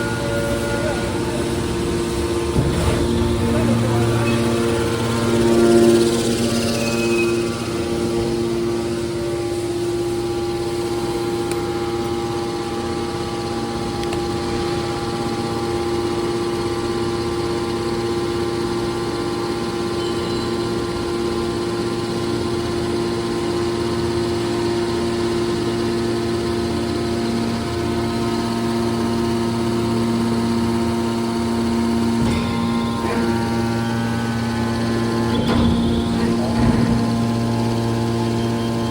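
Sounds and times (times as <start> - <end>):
hydraulic machine hum: 0.0 - 17.2, 24.3 - 38.9.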